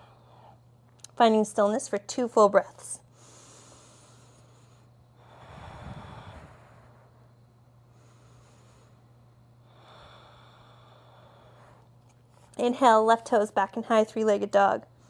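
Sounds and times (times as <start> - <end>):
faint low hum: 0.0 - 15.0
person breathing slowly: 3.1 - 12.0.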